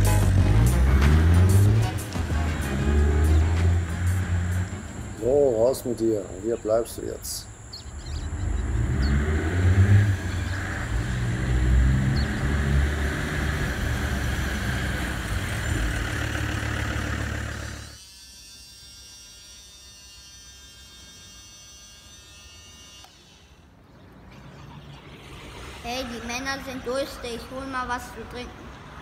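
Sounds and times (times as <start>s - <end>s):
high whine: 0.0s - 23.8s
model vehicle engine rumble: 2.8s - 18.0s.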